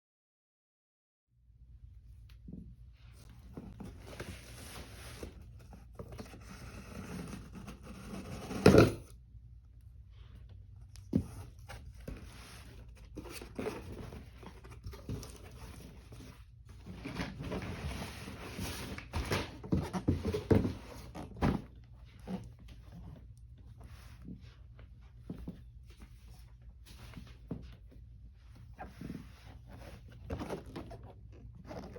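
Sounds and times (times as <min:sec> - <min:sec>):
cardboard packaging rustling: 0:11.2 - 0:22.5.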